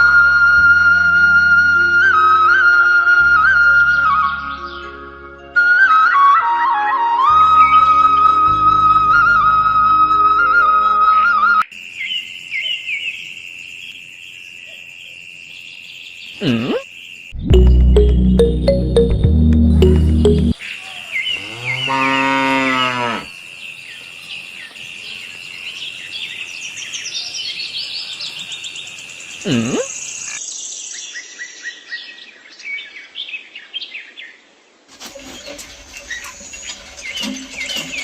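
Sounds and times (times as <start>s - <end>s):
music: 0.0s - 11.6s, 17.4s - 20.6s
birds chirping: 19.8s - 34.4s, 35.2s - 38.0s
cow mooing: 21.4s - 23.3s.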